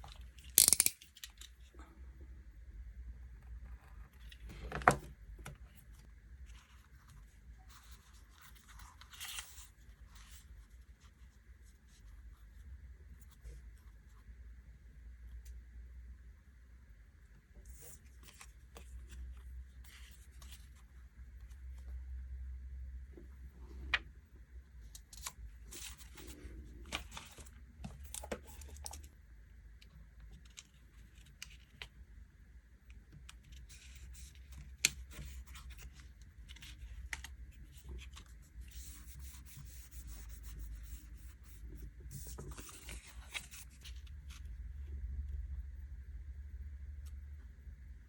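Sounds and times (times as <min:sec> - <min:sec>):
low steady hum: 0:00.0 - 0:48.0
stickers peeling and rubbing: 0:00.5 - 0:01.0.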